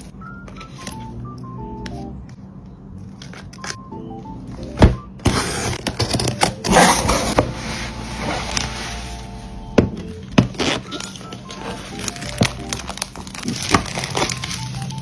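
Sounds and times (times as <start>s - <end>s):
wrapping rustling and tearing: 10.5s - 15.0s.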